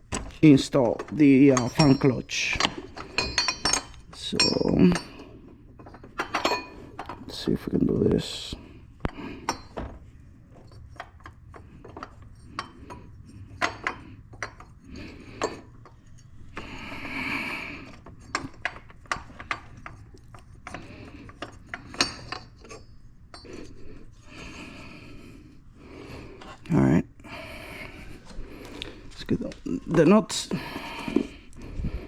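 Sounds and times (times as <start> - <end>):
metal clicks and clinks: 0.7 - 7.6.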